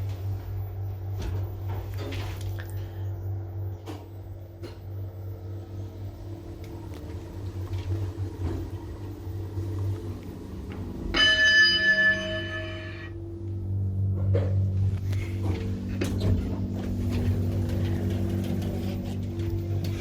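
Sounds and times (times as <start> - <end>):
elevator humming: 0.0 - 20.0
elevator arrival chime: 9.3 - 14.1.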